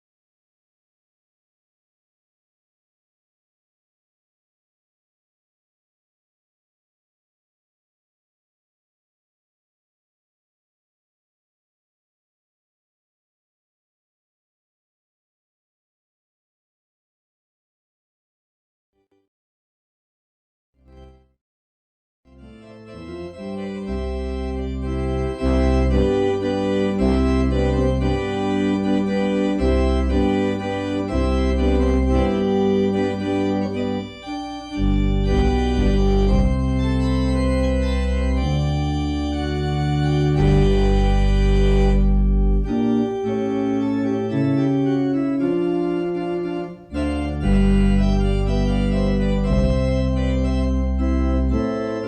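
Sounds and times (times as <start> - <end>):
church organ playing chords: 22.4 - 52.0.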